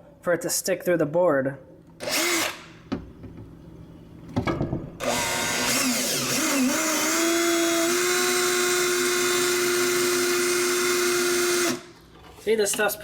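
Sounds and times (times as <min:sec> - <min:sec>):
power drill boring: 0:02.0 - 0:02.7, 0:05.0 - 0:11.9.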